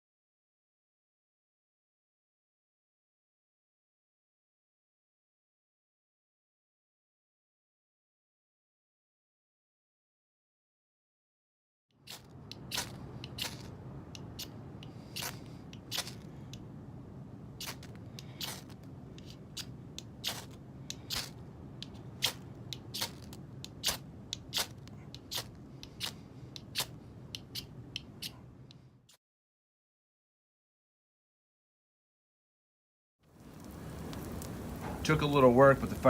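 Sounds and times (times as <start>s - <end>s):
scraper striking fire steel: 12.1s - 16.4s, 17.6s - 28.4s
steady low rumble: 12.2s - 28.9s, 33.4s - 36.0s.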